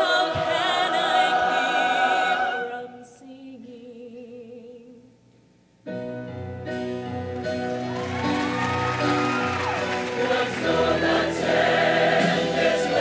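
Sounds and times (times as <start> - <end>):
choir and band playing loudly: 0.0 - 2.9, 9.2 - 13.0
choir singing a held chord: 0.0 - 3.2, 10.1 - 13.0.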